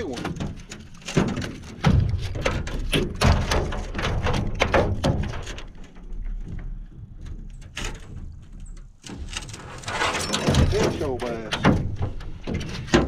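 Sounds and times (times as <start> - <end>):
knocks against aluminum boat: 0.2 - 5.6.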